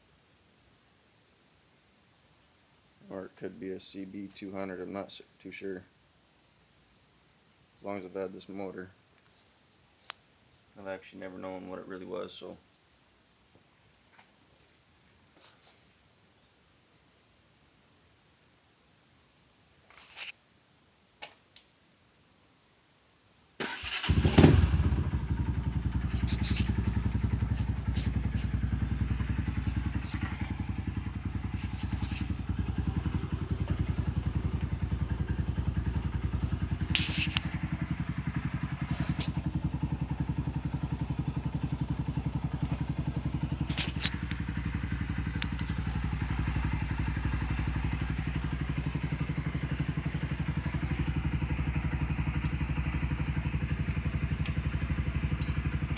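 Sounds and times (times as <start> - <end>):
motorcycle engine idling: 23.7 - 55.9.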